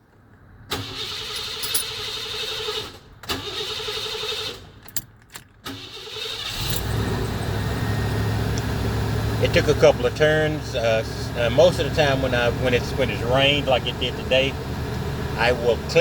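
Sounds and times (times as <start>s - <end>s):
starter cranking engine: 0.7s - 4.7s, 5.7s - 7.2s
engine idling: 5.8s - 16.0s.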